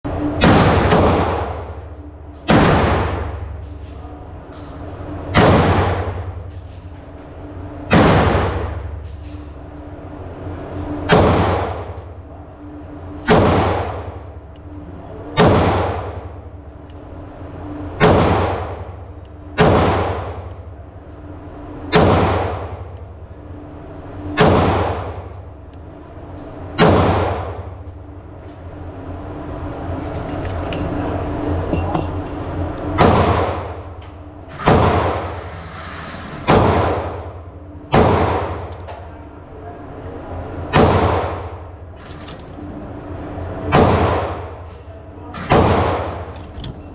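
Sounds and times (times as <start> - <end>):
pistol shots: 0.4 - 1.7, 2.5 - 3.4, 5.3 - 6.2, 7.9 - 8.8, 11.1 - 11.9, 13.2 - 14.2, 15.4 - 16.2, 18.0 - 18.9, 19.6 - 20.4, 21.9 - 22.8, 24.4 - 25.2, 26.8 - 27.6, 33.0 - 33.8, 36.5 - 37.3, 37.9 - 38.7, 40.7 - 41.6, 43.7 - 44.6, 45.4 - 46.3.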